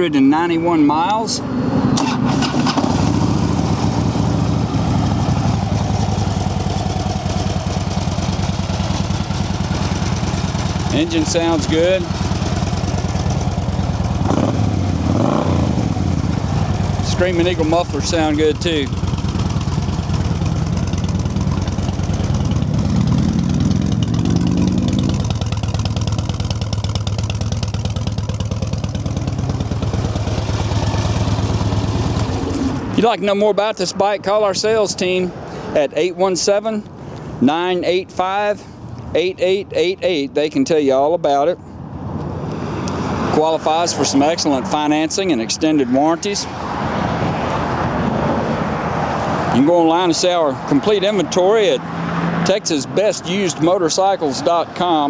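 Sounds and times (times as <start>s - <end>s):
motorcycle engine idling: 1.8s - 33.0s.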